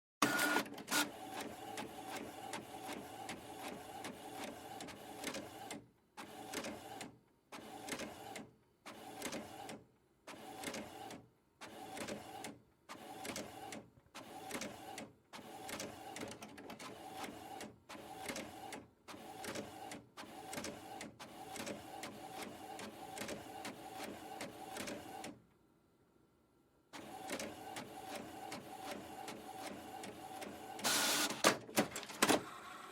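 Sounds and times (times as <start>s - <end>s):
printer whirring: 0.2s - 5.7s, 27.0s - 32.9s.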